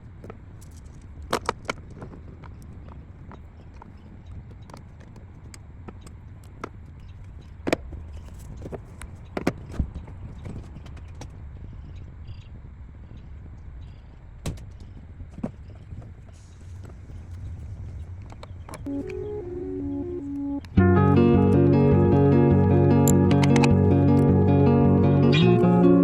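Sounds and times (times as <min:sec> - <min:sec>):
steady low rumble: 0:16.5 - 0:26.0.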